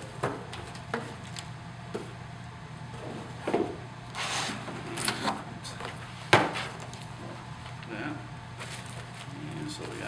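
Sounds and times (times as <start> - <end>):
steady low hum: 0.0 - 10.0
plastic wrap rustling: 8.6 - 10.0.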